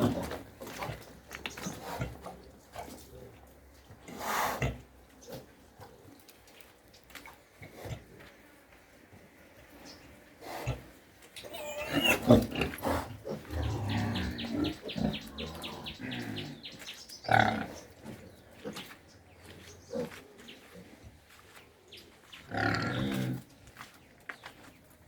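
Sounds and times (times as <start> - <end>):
pigs grunting: 10.4 - 18.9, 22.4 - 23.5
pigs squealing: 11.4 - 16.2.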